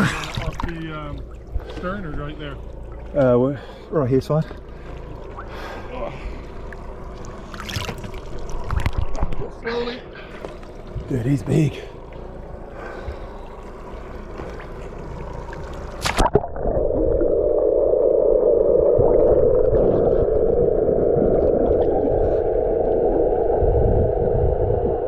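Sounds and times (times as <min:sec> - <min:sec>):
muffled underwater rush: 0:00.0 - 0:25.0
splash into water: 0:16.0 - 0:16.9.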